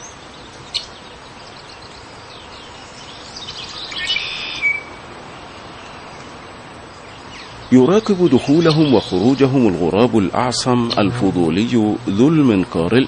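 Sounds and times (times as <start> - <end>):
bird calls and chirps: 0.0 - 5.0, 5.6 - 11.8
bird whistle: 3.5 - 5.0.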